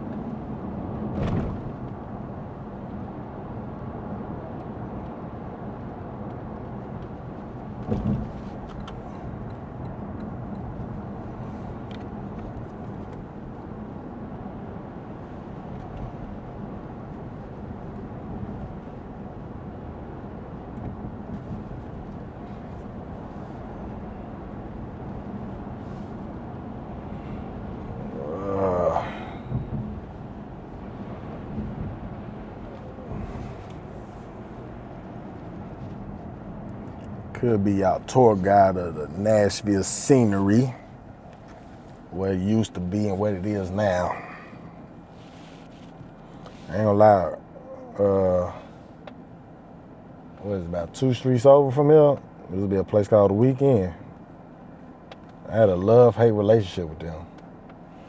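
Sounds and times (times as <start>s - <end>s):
low engine hum: 0.0s - 58.0s
short thump: 1.1s - 1.8s, 7.8s - 8.9s.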